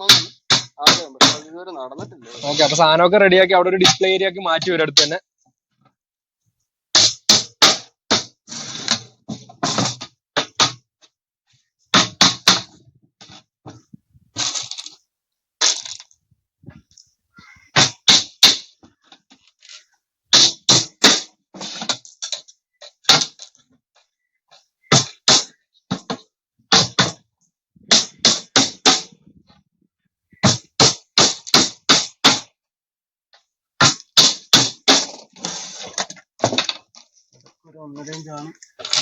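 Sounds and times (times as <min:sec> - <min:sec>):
hammer driving nails into plywood: 0:30.4 - 0:32.5, 0:33.8 - 0:36.8.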